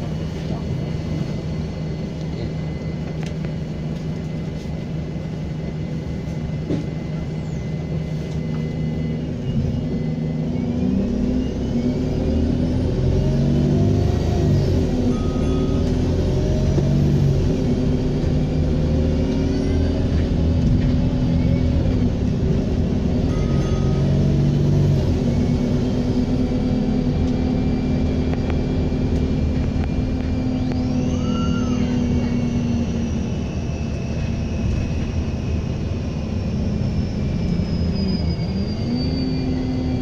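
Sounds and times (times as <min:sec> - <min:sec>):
bus diesel engine: 0:00.0 - 0:40.0
turbocharger whistle: 0:30.4 - 0:40.0.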